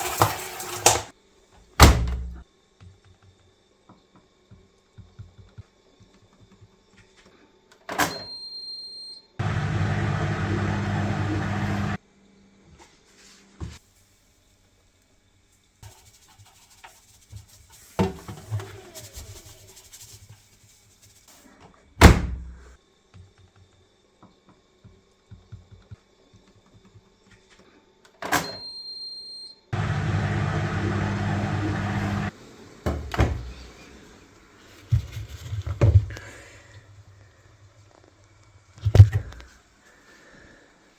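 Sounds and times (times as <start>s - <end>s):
washing machine motor humming: 9.4s - 12.0s, 29.8s - 34.3s.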